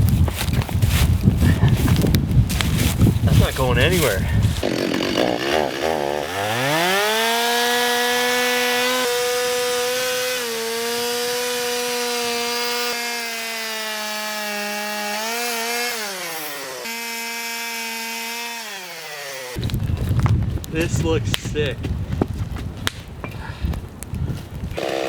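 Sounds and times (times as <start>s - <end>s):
chainsaw cutting wood: 3.9s - 20.4s, 24.6s - 25.0s.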